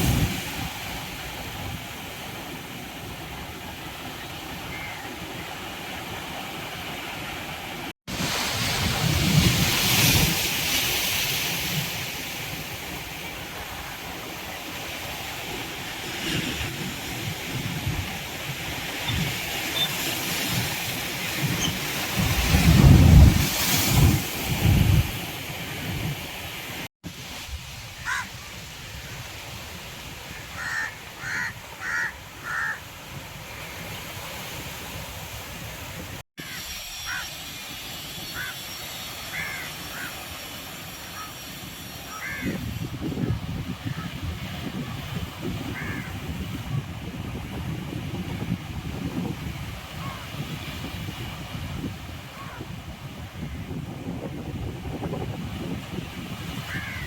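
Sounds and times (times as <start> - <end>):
sea waves breaking on beach: 0.0 - 57.0
crow cawing: 28.0 - 28.3, 30.4 - 32.8, 36.4 - 37.3, 38.4 - 38.6, 39.3 - 40.2, 42.1 - 42.5, 45.8 - 46.1, 56.7 - 57.0.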